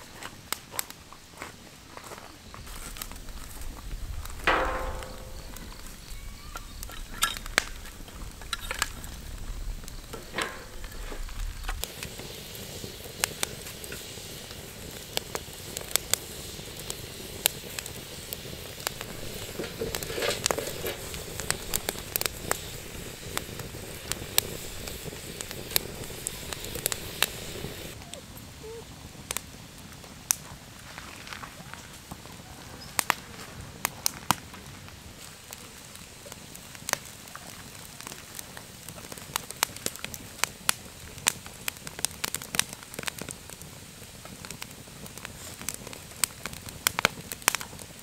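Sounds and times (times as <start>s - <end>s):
firewood crackling and popping: 0.0s - 48.0s
short ringing sound: 4.5s - 7.5s.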